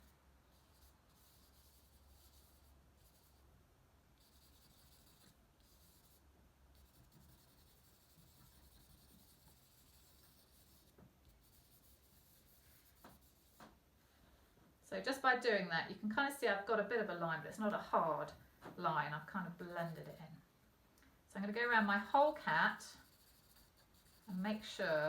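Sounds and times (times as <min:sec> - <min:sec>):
charcoal rubbing on paper: 0:00.0 - 0:03.4, 0:04.2 - 0:13.6, 0:19.7 - 0:20.2, 0:22.2 - 0:25.0
low room hum: 0:00.0 - 0:25.0.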